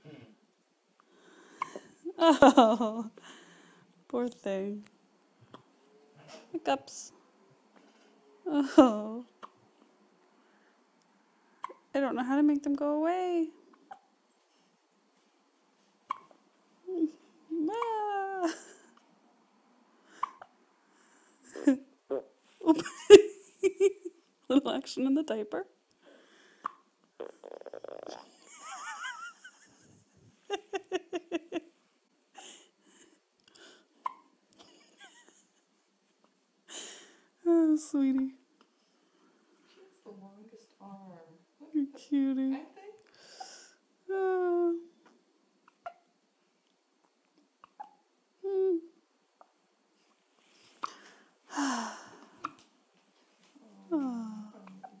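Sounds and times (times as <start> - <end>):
baby hiccuping: 11.6 - 11.8, 13.9 - 14.1, 16.1 - 16.4, 20.2 - 20.5, 34.0 - 34.3, 45.6 - 46.1, 47.6 - 48.0, 54.6 - 55.0.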